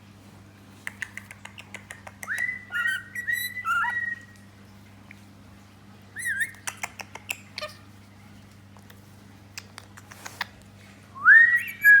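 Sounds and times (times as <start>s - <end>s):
parrot whistling: 2.3s - 4.3s, 6.2s - 6.6s, 11.2s - 12.0s.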